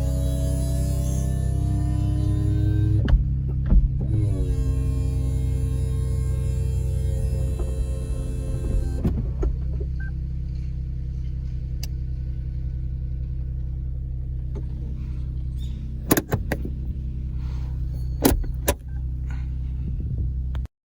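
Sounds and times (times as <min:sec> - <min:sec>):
car engine idling: 0:00.0 - 0:20.6
sharp clicks and knocks: 0:16.0 - 0:16.8, 0:17.8 - 0:19.0.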